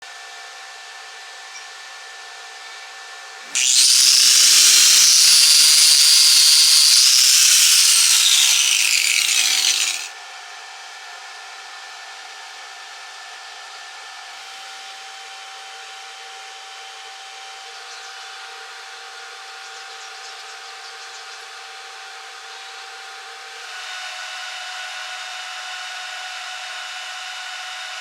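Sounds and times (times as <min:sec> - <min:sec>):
angle grinder cutting metal: 0:03.5 - 0:10.1, 0:23.6 - 0:28.0.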